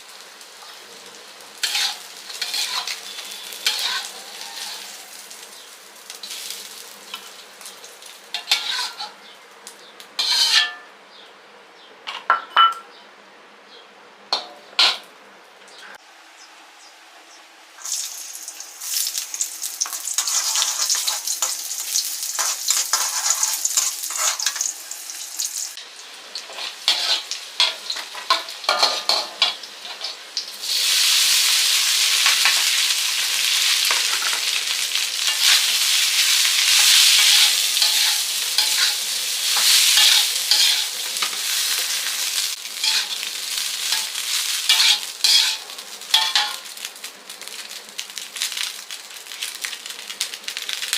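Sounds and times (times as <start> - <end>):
food sizzling in a pan: 0.0 - 10.9, 17.8 - 50.9
utensil scraping a pan: 1.6 - 5.0, 8.4 - 9.2, 10.2 - 10.9, 19.9 - 21.6, 22.4 - 24.7, 26.5 - 30.2, 36.7 - 42.0, 42.8 - 43.3, 43.9 - 46.6.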